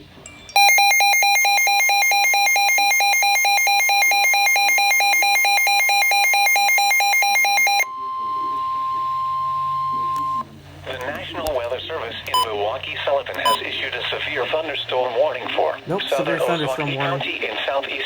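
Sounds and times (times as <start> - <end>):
steady single-pitch warning tone: 0.3 - 10.5
rapid alternating alarm beep: 0.6 - 10.4.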